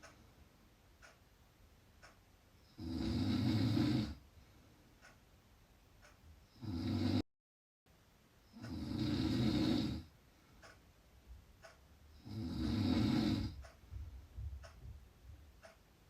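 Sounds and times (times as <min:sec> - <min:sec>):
quiet breathing: 0:02.0 - 0:05.2, 0:08.4 - 0:11.0, 0:11.6 - 0:14.7
person snoring loudly: 0:02.8 - 0:04.2, 0:06.6 - 0:07.2, 0:08.5 - 0:10.1, 0:12.2 - 0:13.6.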